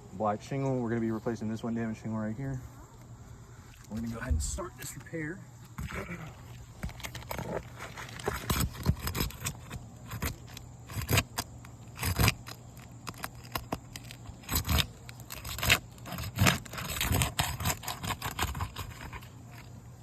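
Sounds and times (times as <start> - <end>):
tool scraping roof shingles: 5.7 - 19.8
rasping strokes: 6.8 - 19.8.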